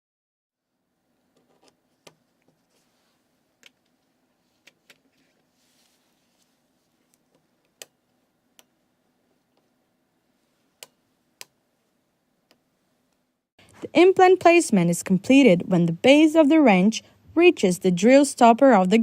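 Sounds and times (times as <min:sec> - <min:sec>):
background hiss: 0:00.8 - 0:14.9.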